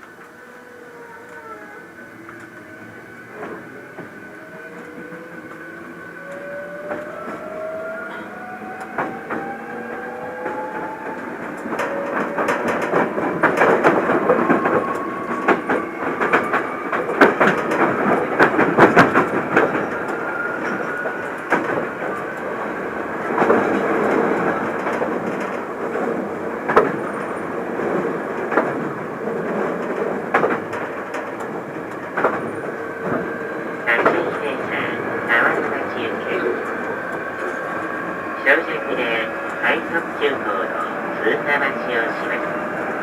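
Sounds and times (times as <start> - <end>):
train rumbling: 0.0 - 43.0
wheels clacking over rail joints: 2.2 - 33.8.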